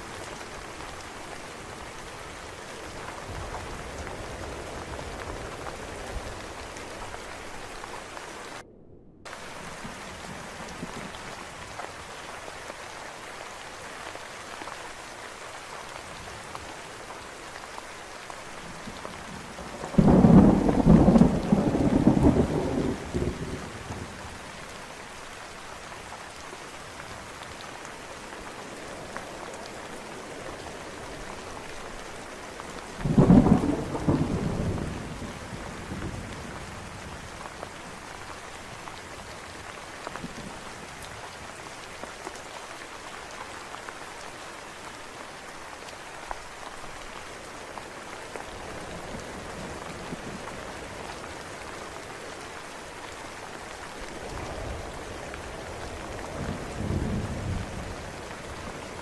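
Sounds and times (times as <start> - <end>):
steady rainfall: 0.0 - 59.0
thunder rolling: 3.3 - 11.5, 19.7 - 24.6, 33.0 - 36.3.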